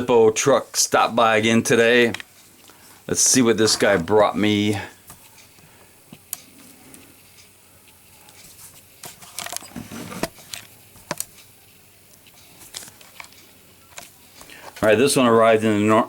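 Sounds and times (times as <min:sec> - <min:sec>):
package rustling: 0:12.2 - 0:14.9.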